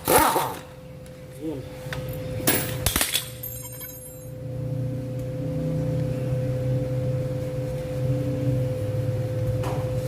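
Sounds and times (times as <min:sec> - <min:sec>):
low mechanical hum: 0:00.0 - 0:10.0
constant high tone: 0:03.4 - 0:09.6.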